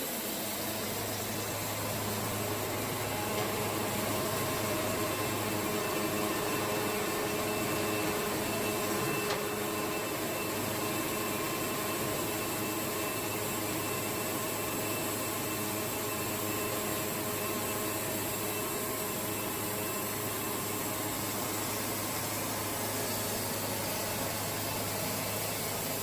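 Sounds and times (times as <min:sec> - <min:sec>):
faint steady whine: 0:00.0 - 0:26.0
sawmill machinery humming: 0:00.0 - 0:26.0.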